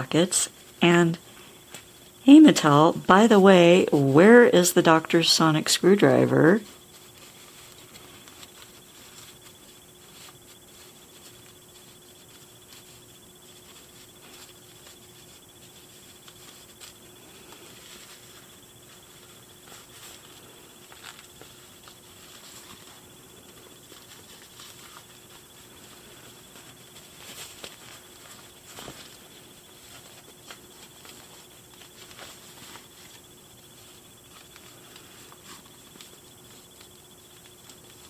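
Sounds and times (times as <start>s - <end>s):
doll clothes rustling and clicking: 0.0s - 38.0s
faint steady hum: 0.0s - 38.0s.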